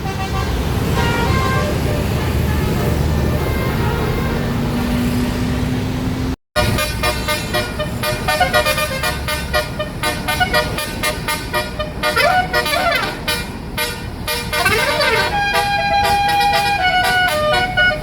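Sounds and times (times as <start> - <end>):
bus horn warbling melody: 0.0 - 4.5, 6.6 - 18.0
road noise: 0.0 - 18.0.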